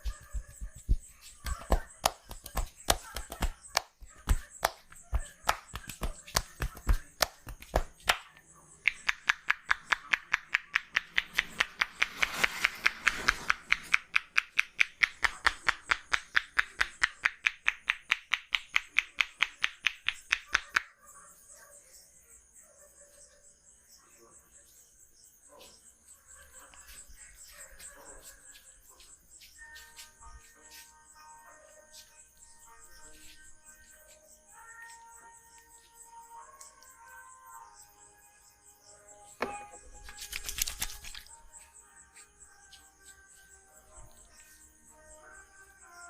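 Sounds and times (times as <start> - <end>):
fast sharp hand strikes: 0.0 - 17.0
hand slaps on body: 0.0 - 20.9.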